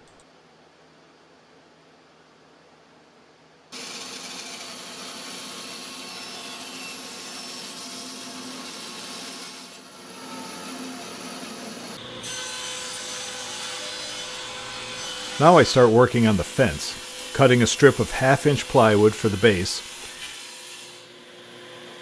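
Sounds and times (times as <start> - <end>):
saw cutting plywood: 3.8 - 21.1.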